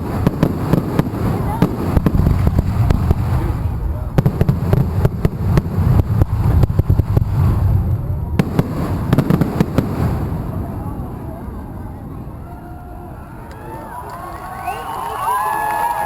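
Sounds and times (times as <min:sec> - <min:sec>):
fireworks popping and crackling: 0:00.0 - 0:11.8
low rumble: 0:00.0 - 0:12.4.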